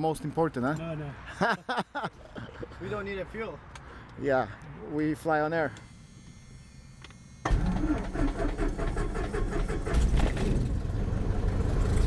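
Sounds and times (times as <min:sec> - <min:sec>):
piston engine starting: 0:07.4 - 0:12.0.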